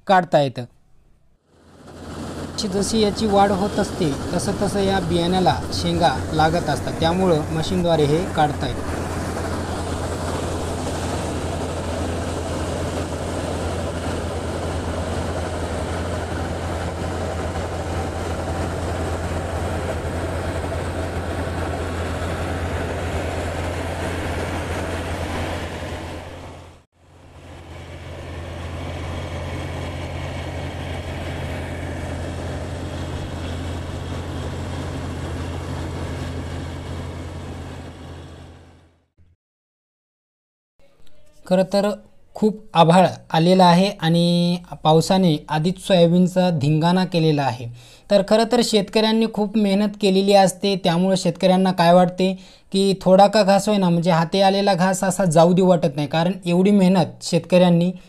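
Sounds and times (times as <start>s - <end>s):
combine harvester running: 1.5s - 39.1s.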